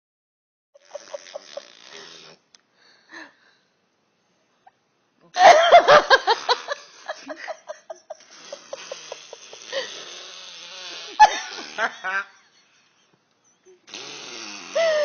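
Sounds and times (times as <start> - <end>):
woman laughing hysterically: 5.4 - 9.9, 11.2 - 13.9.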